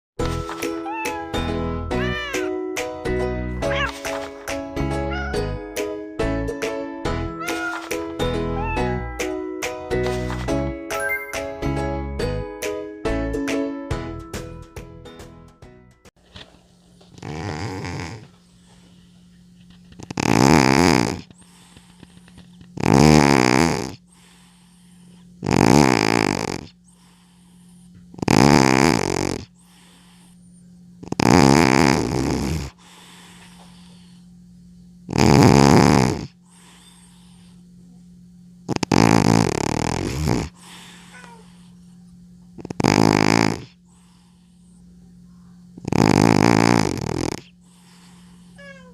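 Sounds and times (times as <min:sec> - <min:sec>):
cat snoring: 0:00.8 - 0:02.5, 0:07.4 - 0:09.3, 0:17.2 - 0:18.3, 0:20.0 - 0:21.8, 0:22.8 - 0:30.4, 0:31.0 - 0:34.2, 0:35.1 - 0:37.6, 0:38.7 - 0:41.7, 0:42.6 - 0:44.8, 0:45.8 - 0:48.9.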